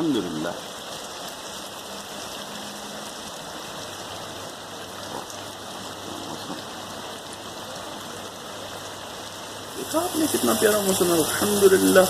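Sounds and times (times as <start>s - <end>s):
rain falling: 0.0s - 12.0s.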